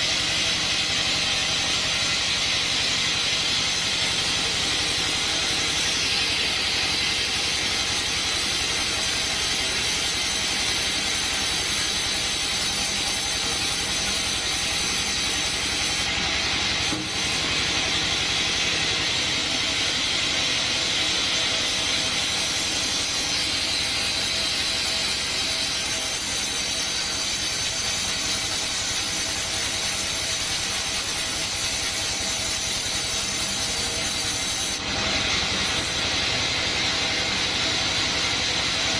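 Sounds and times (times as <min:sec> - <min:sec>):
band sawmill sawing wood: 0:00.0 - 0:38.9.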